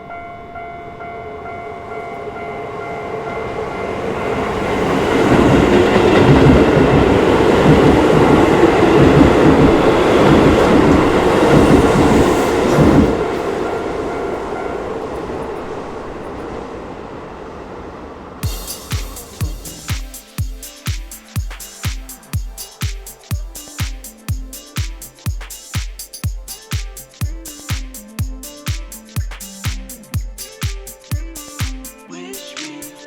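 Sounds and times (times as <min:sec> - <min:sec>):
level crossing warning bell: 0:00.0 - 0:16.0.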